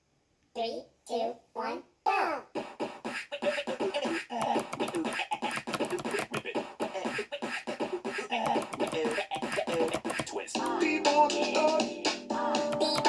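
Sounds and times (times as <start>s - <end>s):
vocal music: 1.6s - 13.0s
fast keyboard typing clicks: 4.4s - 6.9s, 8.5s - 10.8s, 12.7s - 13.0s.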